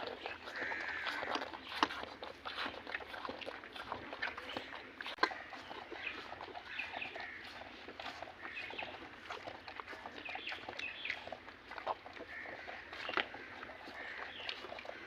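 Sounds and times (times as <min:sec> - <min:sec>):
calf sucking at udder: 0:00.0 - 0:15.0
small birds chirping: 0:00.0 - 0:15.0.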